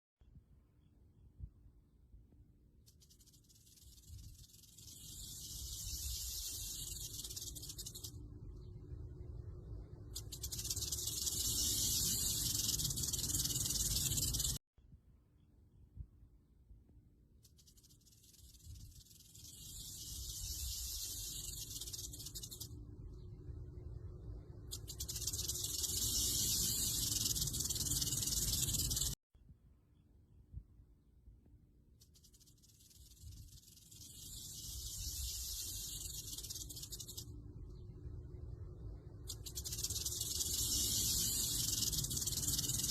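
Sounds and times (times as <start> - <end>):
rattlesnake tail rattle buzzing: 2.8 - 8.3, 10.1 - 14.6, 17.4 - 22.8, 24.6 - 29.2, 32.0 - 37.4, 39.2 - 42.9.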